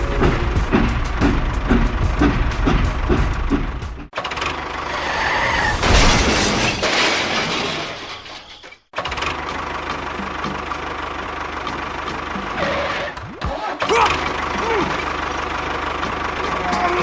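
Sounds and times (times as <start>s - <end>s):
small engine running: 9.0s - 13.2s, 13.9s - 17.0s.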